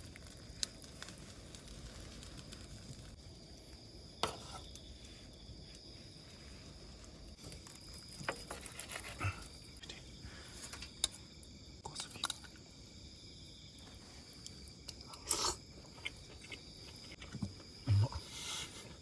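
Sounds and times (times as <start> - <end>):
wood fire snapping: 0.0 - 3.9.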